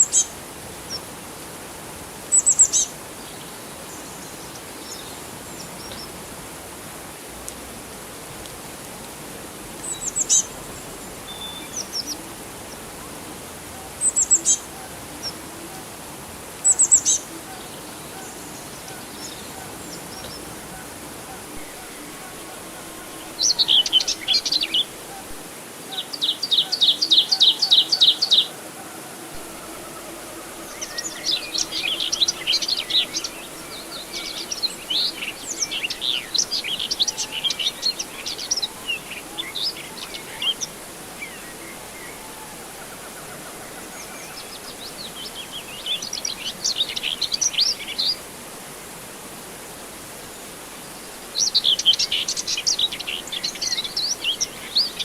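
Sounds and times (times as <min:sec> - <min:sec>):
steady background hiss: 0:00.0 - 0:55.0
small birds chirping: 0:16.6 - 0:28.5, 0:30.6 - 0:42.2.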